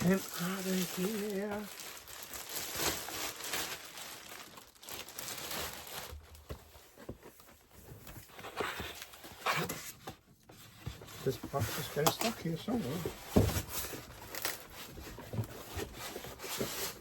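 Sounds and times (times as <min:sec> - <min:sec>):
cardboard box rustling and scraping: 0:06.4 - 0:17.0.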